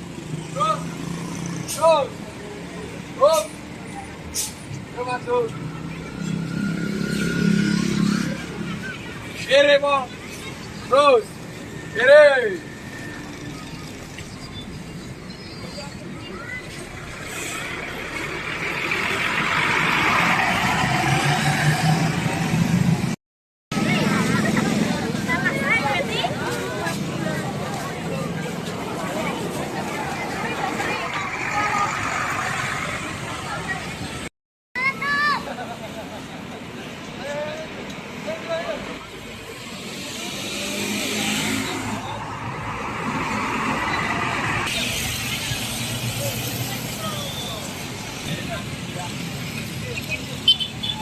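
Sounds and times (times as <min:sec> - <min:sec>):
bus engine rumbling: 0:00.0 - 0:51.0.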